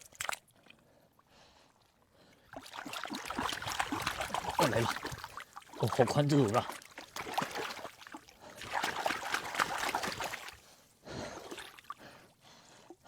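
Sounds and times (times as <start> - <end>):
water splashing and trickling: 0.0 - 1.0, 2.2 - 10.8.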